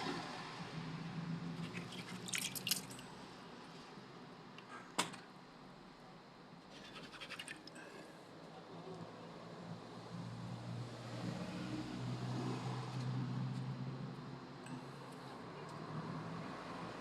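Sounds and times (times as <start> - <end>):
air conditioner humming: 0.0 - 10.1.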